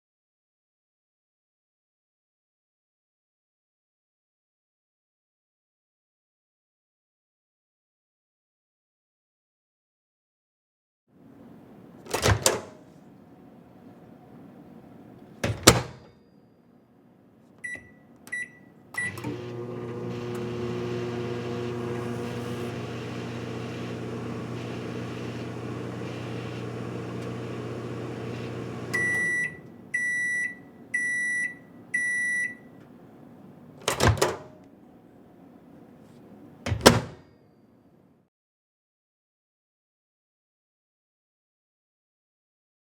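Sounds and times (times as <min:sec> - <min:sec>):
microwave running hum: 0:19.0 - 0:33.2
keypad beeps: 0:28.9 - 0:32.6
long end-of-cycle beeps: 0:28.9 - 0:32.7.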